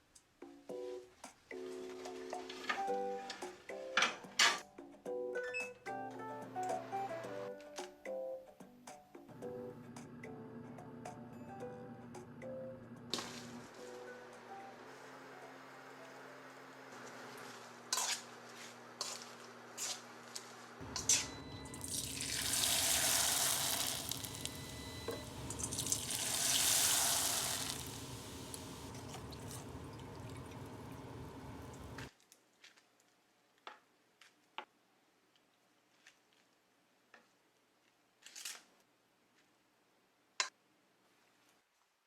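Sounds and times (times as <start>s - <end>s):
tap water running into sink: 20.9s - 32.1s.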